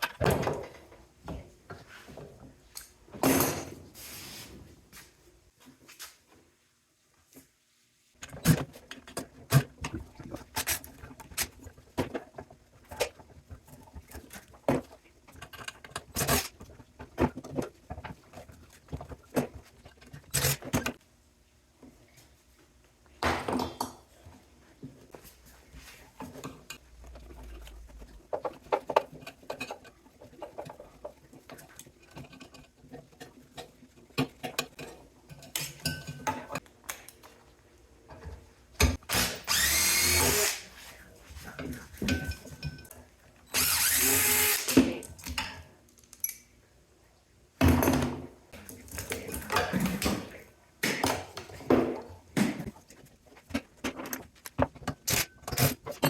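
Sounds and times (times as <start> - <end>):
power drill running: 39.1 - 40.6, 43.5 - 44.8.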